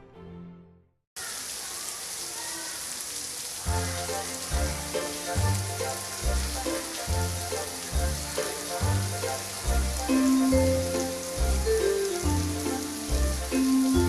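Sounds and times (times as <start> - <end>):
rain hissing: 1.2 - 14.0
instrumental music: 3.8 - 14.0.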